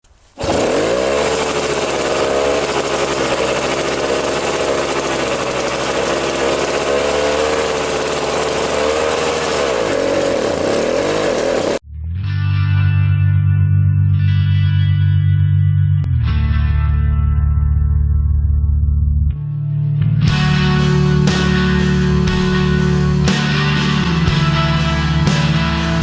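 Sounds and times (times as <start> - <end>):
bulldozer engine running: 0.4 - 11.8, 20.3 - 26.0
heavy mechanical noise: 0.4 - 11.8, 20.3 - 26.0.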